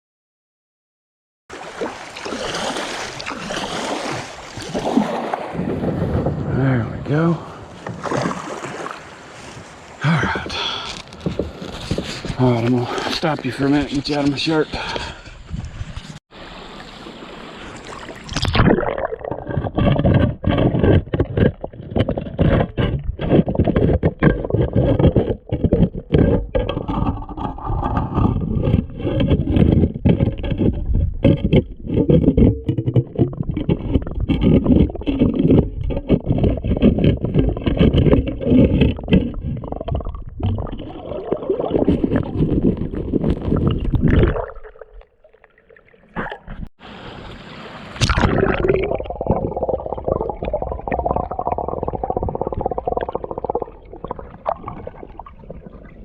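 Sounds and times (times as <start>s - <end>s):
muffled scraping against microphone: 9.4s - 16.2s, 19.3s - 40.9s, 41.6s - 44.2s
water gurgling: 16.8s - 46.7s, 48.0s - 56.0s.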